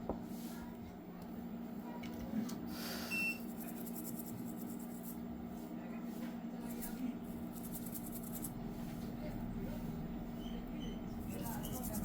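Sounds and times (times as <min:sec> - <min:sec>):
low electrical hum: 0:00.0 - 0:12.0
faint scratching: 0:03.5 - 0:05.2, 0:06.1 - 0:09.1, 0:11.1 - 0:12.0.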